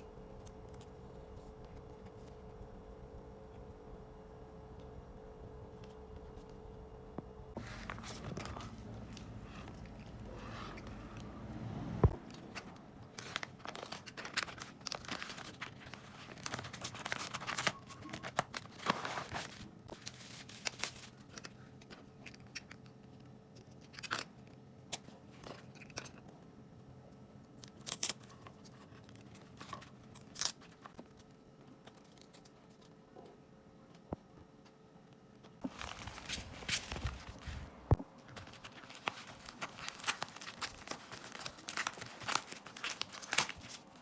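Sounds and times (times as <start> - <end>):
packaging tearing and crinkling: 12.4 - 21.4, 38.3 - 44.0
small clicks and handling noises: 19.9 - 26.4, 27.4 - 44.0.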